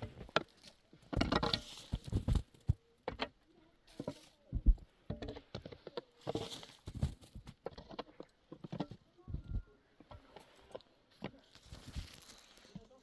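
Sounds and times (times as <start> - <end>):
rustling: 0.0 - 2.9, 3.8 - 13.0
knocks and thumps: 1.1 - 3.3, 4.0 - 5.8.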